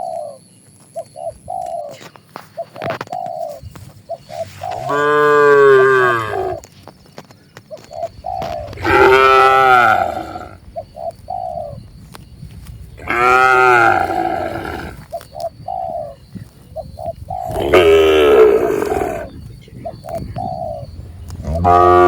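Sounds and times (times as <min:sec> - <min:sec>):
dove cooing: 0:01.0 - 0:06.7, 0:07.6 - 0:12.0, 0:12.8 - 0:22.0
cattle mooing: 0:04.9 - 0:06.6, 0:08.8 - 0:10.6, 0:13.0 - 0:15.0, 0:17.5 - 0:19.3, 0:21.4 - 0:22.0.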